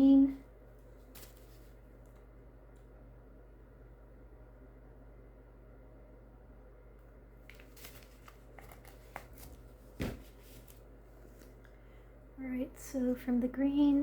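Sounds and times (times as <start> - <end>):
steady low hum: 0.0 - 14.0
crinkly rustles: 0.8 - 2.2, 7.4 - 11.6.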